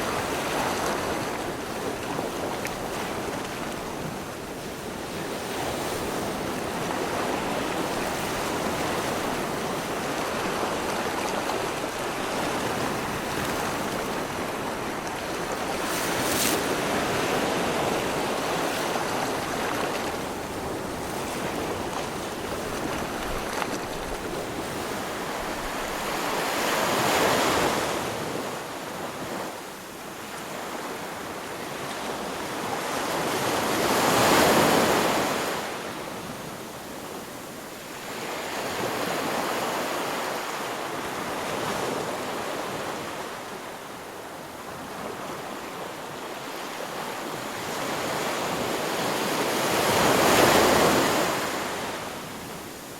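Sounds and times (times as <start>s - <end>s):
waves washing in: 0.0s - 29.3s.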